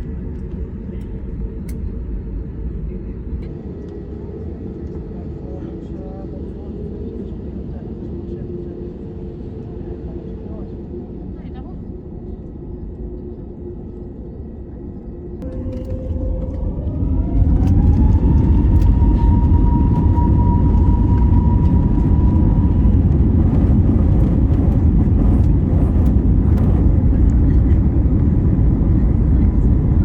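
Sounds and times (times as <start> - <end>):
jet engines whining: 0.0 - 30.0
loud even rumble: 15.3 - 30.0.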